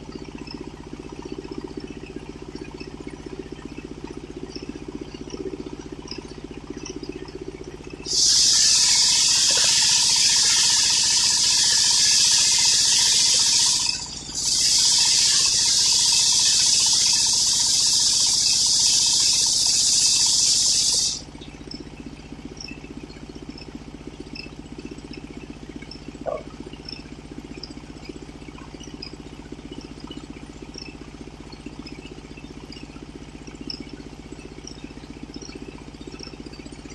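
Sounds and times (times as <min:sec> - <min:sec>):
engine running with low beat: 0:00.0 - 0:36.9
saw blade cutting log: 0:08.1 - 0:21.2.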